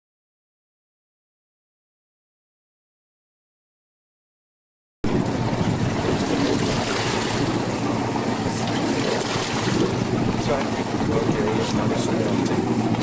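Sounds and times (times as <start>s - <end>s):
sea noise: 5.0s - 13.0s
wind: 5.0s - 13.0s.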